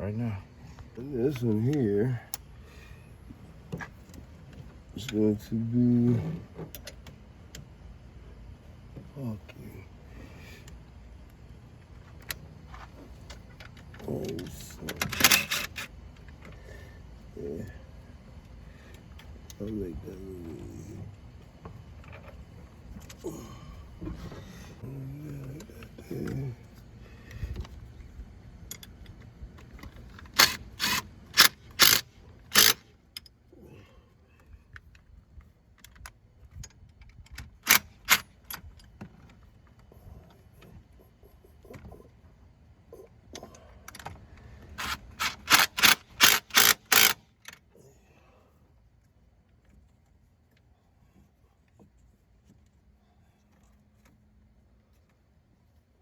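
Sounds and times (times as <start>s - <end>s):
hand ratchet clicking: 15.0s - 15.9s, 30.2s - 32.8s, 37.6s - 38.2s, 44.8s - 47.2s.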